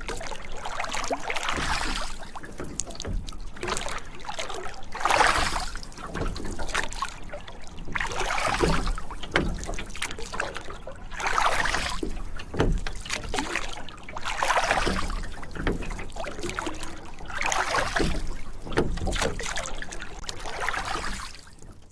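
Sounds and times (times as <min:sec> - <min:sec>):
oars splashing through water: 0:00.0 - 0:21.9.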